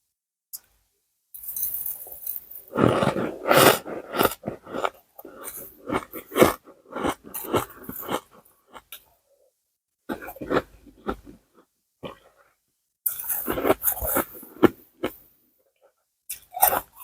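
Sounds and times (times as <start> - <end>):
ice being chewed: 1.4 - 9.0, 10.1 - 12.3, 13.1 - 15.2, 16.3 - 17.0.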